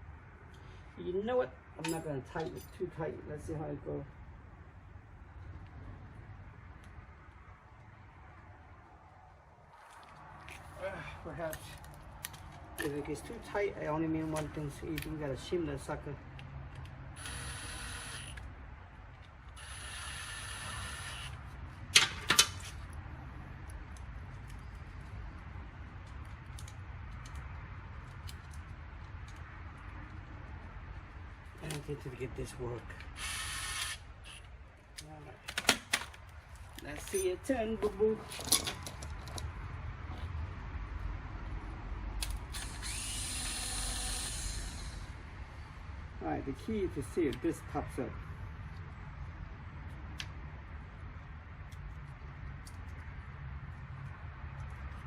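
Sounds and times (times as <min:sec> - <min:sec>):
ratchet wrench clicking: 0:17.2 - 0:18.4, 0:42.2 - 0:45.0
small electric motor whining: 0:17.2 - 0:18.4, 0:19.6 - 0:21.4, 0:33.2 - 0:34.5, 0:42.5 - 0:45.1.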